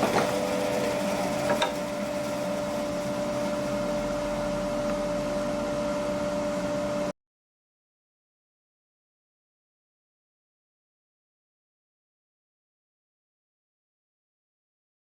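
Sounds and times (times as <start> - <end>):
bandsaw motor hum: 0.0 - 7.0.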